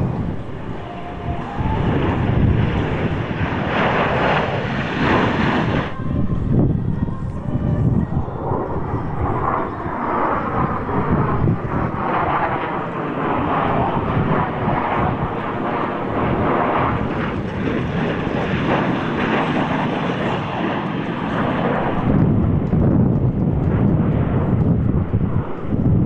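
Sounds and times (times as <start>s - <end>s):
airplane engine drone: 0.0s - 26.0s.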